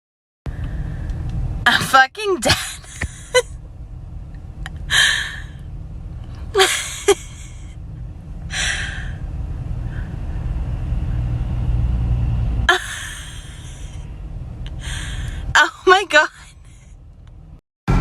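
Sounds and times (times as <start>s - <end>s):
low rumble: 0.5s - 1.7s, 2.8s - 15.6s
person laughing breathily: 2.8s - 3.5s, 6.6s - 7.7s, 12.7s - 14.0s.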